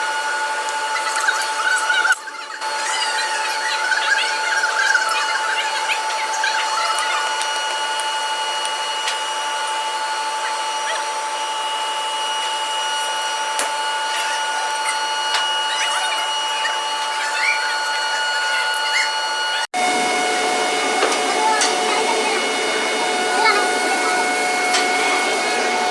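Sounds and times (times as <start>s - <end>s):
electric machine whining: 0.0s - 25.9s.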